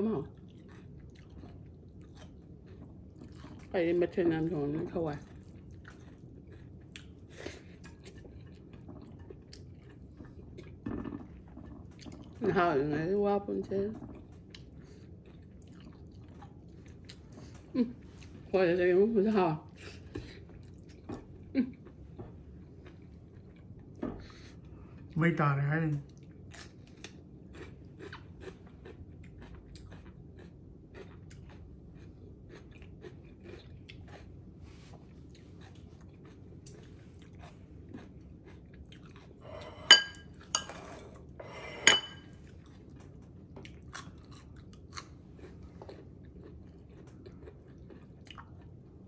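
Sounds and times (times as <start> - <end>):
chewing and crunching food: 0.0 - 18.5, 19.6 - 25.3, 25.9 - 49.0
utensil clinking against dish: 39.8 - 40.8, 41.8 - 42.4.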